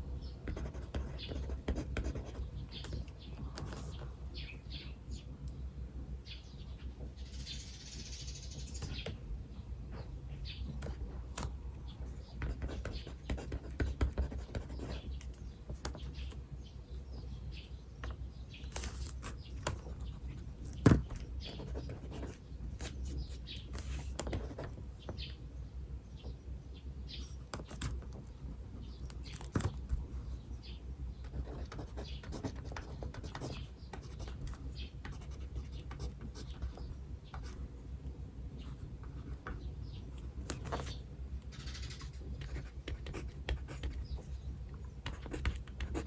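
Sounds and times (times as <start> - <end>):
birds chirping: 0.1 - 37.9, 38.5 - 46.0
pen scratching on paper: 0.4 - 3.0, 12.4 - 16.1, 21.1 - 24.7, 31.2 - 37.6, 41.7 - 44.3, 45.0 - 46.0.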